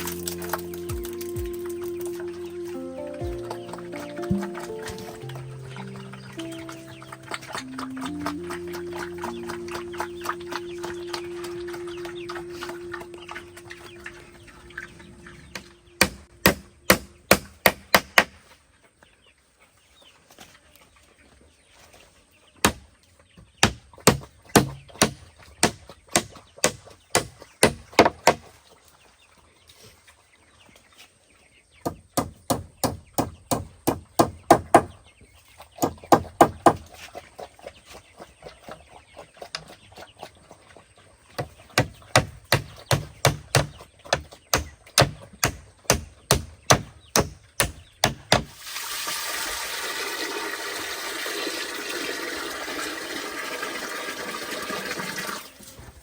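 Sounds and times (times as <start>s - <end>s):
background music: 0.0s - 17.4s.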